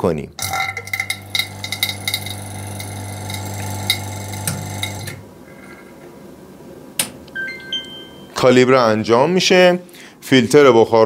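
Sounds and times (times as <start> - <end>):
vacuum pump motor humming: 0.4 - 5.2.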